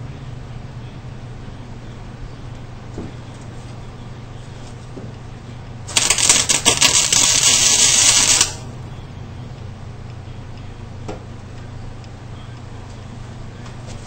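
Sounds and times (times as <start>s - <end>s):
steady low hum: 0.0s - 14.0s
welding arc crackling: 5.9s - 8.7s.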